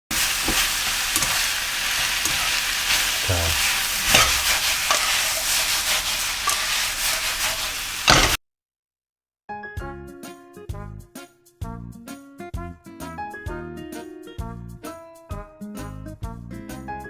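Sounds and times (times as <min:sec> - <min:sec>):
food sizzling in frying pan: 0:00.0 - 0:08.4
utensil scraping pan: 0:00.2 - 0:08.4.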